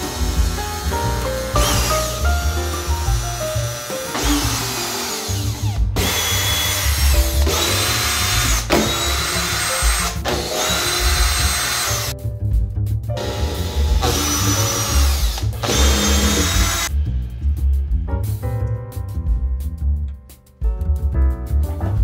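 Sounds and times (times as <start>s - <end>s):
power drill whining: 0.0s - 2.2s, 2.8s - 12.1s, 13.2s - 16.9s
background music: 0.0s - 22.0s.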